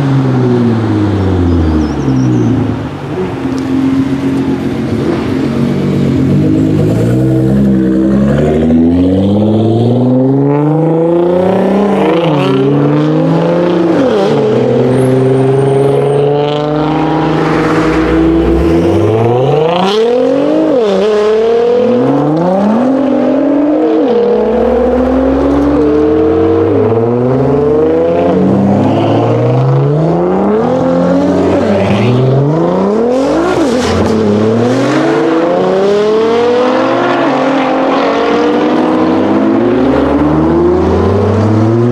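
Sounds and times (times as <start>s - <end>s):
car engine accelerating through gears: 0.0s - 41.9s.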